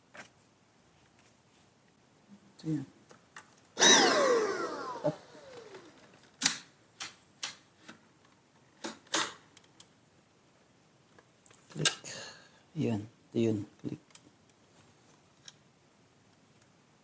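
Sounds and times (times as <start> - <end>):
vacuum whine winding down: 3.8 - 6.1.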